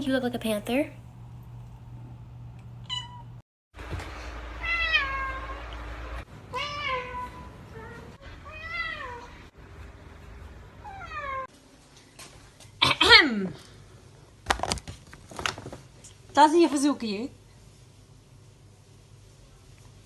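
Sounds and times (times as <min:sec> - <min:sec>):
cats meowing: 0:06.5 - 0:09.4.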